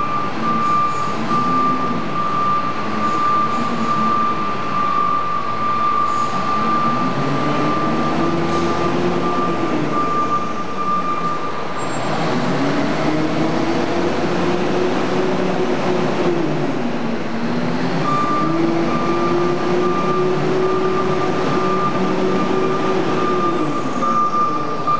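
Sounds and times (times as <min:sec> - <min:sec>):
high-pitched reversing beeper: 0:00.0 - 0:11.5
loader diesel engine revving: 0:00.0 - 0:24.9.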